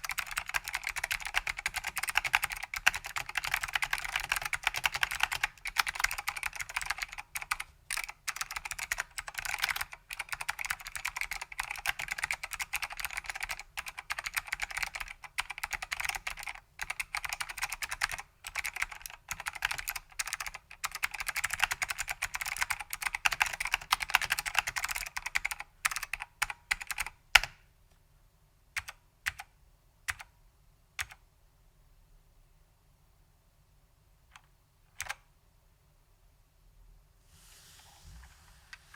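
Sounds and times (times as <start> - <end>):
typing on a keyboard: 0.0 - 27.6, 28.8 - 29.5, 30.1 - 30.3, 31.0 - 31.2, 34.3 - 35.3.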